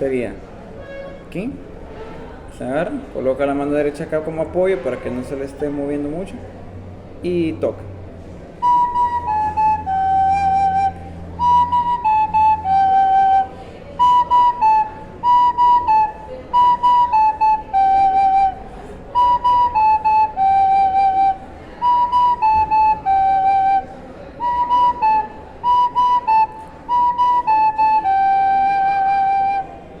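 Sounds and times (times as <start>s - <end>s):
recorder playing a simple tune: 8.6s - 30.0s.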